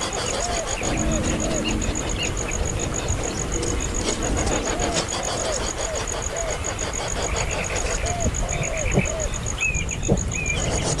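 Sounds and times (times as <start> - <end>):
higher chirps: 0.4 - 6.9.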